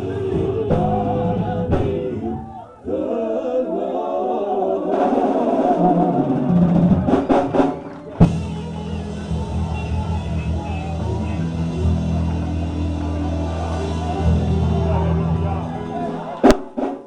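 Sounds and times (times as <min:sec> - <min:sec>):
band with drums: 0:00.0 - 0:02.6, 0:04.9 - 0:17.0
voices singing gospel: 0:00.0 - 0:16.5
quick drum strokes: 0:04.9 - 0:14.4, 0:16.4 - 0:17.0.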